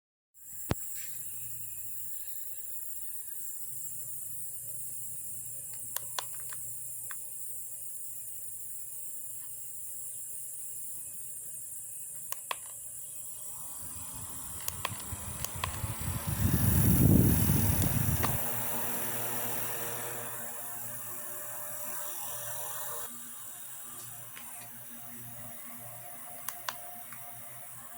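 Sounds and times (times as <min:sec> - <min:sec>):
humidifier hiss: 0:00.5 - 0:27.9
clicks: 0:05.7 - 0:07.2, 0:12.2 - 0:12.8, 0:14.5 - 0:16.0, 0:17.7 - 0:18.4, 0:26.4 - 0:27.3
fan low hum: 0:13.4 - 0:23.2
air blowing on microphone: 0:14.2 - 0:18.6.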